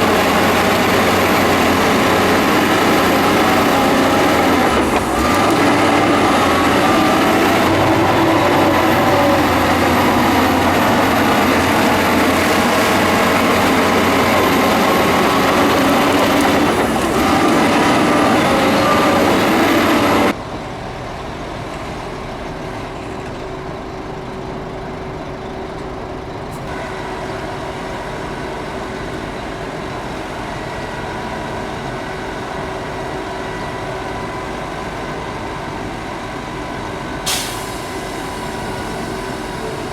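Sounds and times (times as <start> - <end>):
heavy diesel machinery running: 0.0 - 39.9.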